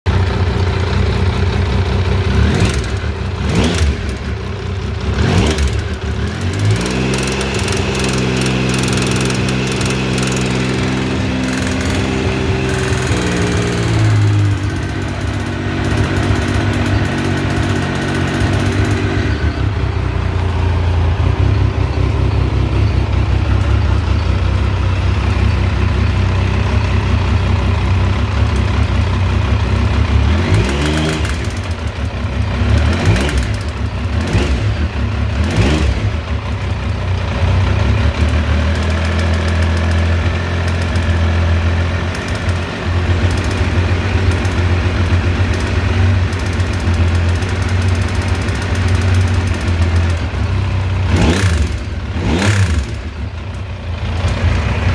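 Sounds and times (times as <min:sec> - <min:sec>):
motorcycle engine idling: 0:00.0 - 0:54.9
engine throttle blips: 0:00.1 - 0:54.9.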